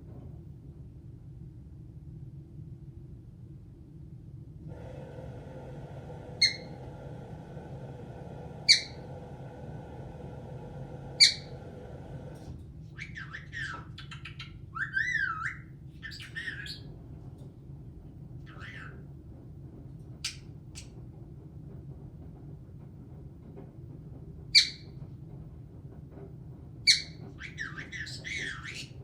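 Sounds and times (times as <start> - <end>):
parrot chirps and whistles: 6.4 - 6.8, 8.7 - 9.0, 11.2 - 11.5, 12.9 - 16.9, 24.6 - 24.9, 26.9 - 29.0
parrot squawking: 6.4 - 6.8, 8.7 - 9.0, 11.2 - 11.5, 13.0 - 16.8, 18.5 - 19.0, 24.6 - 24.8, 26.9 - 29.0.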